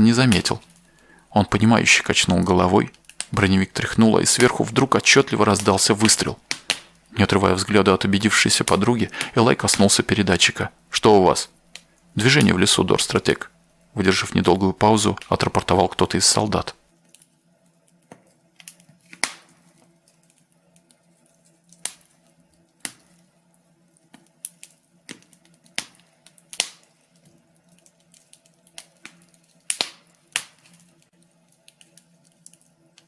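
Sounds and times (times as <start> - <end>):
wood fire crackling and popping: 0.0 - 16.8, 19.1 - 19.5, 21.8 - 22.2, 24.1 - 33.0
faint low hum: 0.0 - 16.9.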